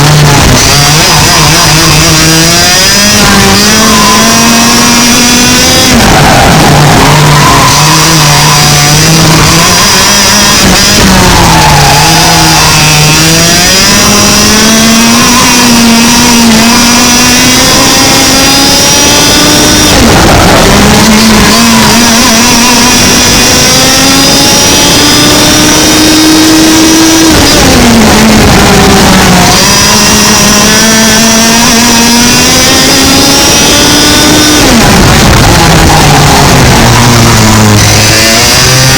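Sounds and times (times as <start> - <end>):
two-stroke kart engine racing: 0.0 - 38.9.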